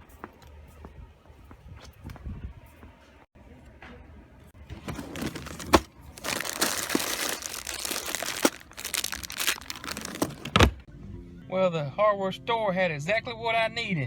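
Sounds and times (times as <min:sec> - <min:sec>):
rustling and crinkling handling noise: 0:04.6 - 0:10.9.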